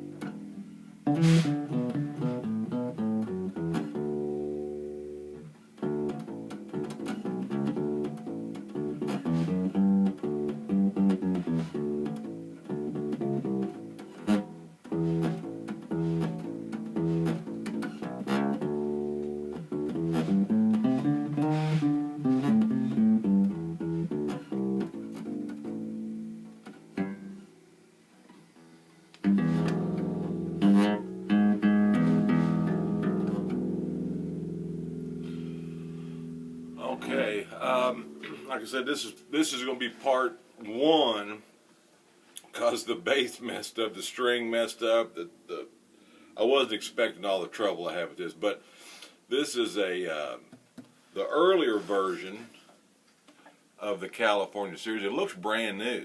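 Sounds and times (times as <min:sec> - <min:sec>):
plucked acoustic bass guitar: 0:00.0 - 0:27.7, 0:28.3 - 0:40.9.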